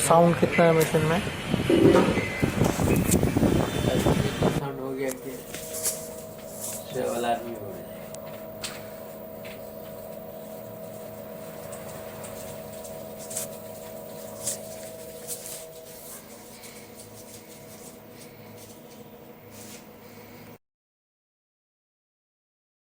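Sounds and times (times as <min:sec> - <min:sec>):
washing machine humming: 0:00.9 - 0:20.5
faint whine: 0:01.6 - 0:20.6.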